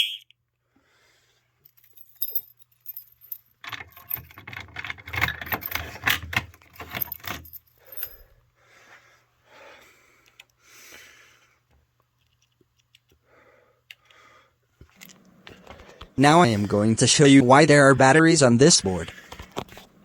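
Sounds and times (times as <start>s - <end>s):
faint muffled handling sounds: 18.6s - 20.0s.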